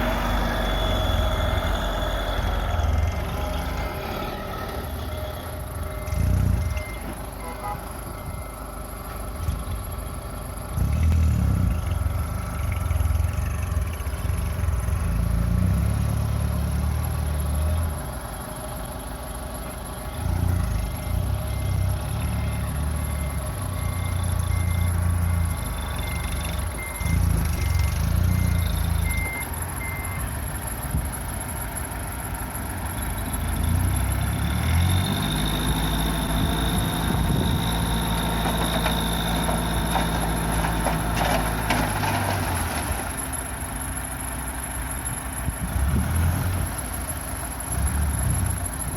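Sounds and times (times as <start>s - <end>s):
reversing alarm beeping: 0.0s - 9.4s, 20.0s - 30.5s, 33.5s - 41.3s
diesel engine revving: 0.0s - 48.9s.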